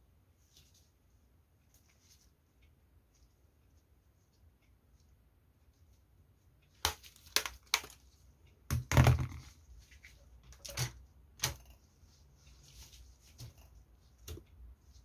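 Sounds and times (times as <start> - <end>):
objects knocking and crackling: 8.7 - 9.6.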